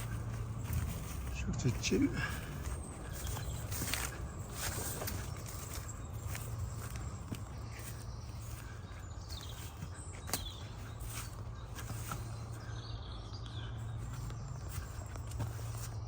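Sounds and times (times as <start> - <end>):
birds chirping: 0.0 - 16.0
footsteps on woodland floor: 0.0 - 16.0
twigs snapping: 10.2 - 10.6.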